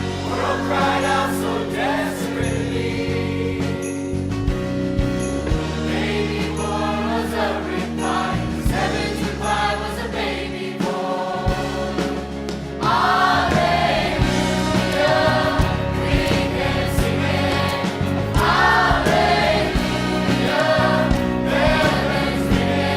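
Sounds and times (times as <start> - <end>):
choir singing gospel song: 0.0 - 4.2, 5.5 - 22.9
bass line and drum hits: 0.0 - 10.2, 10.9 - 22.9.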